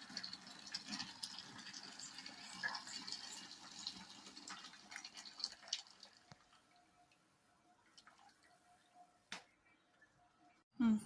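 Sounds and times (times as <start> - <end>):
water drips and ticks: 0.0 - 10.6.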